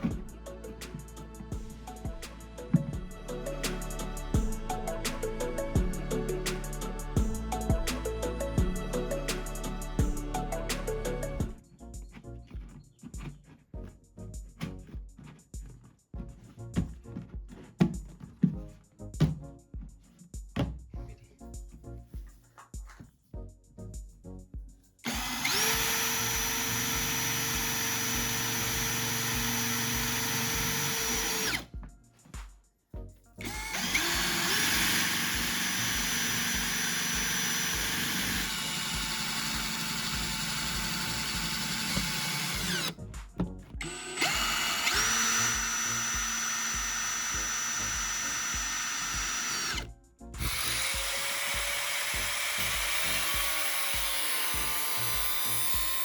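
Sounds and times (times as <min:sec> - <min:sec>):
power tool motor running: 0:00.0 - 0:11.6, 0:25.1 - 0:31.7, 0:33.4 - 0:43.0, 0:43.8 - 0:56.0.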